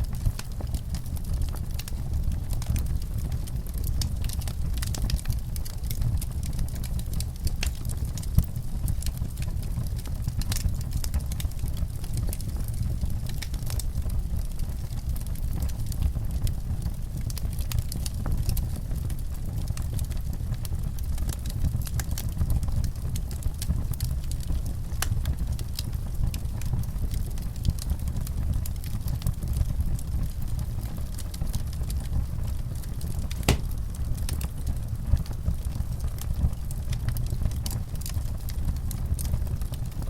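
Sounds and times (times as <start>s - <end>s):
wood fire crackling: 0.0s - 40.0s.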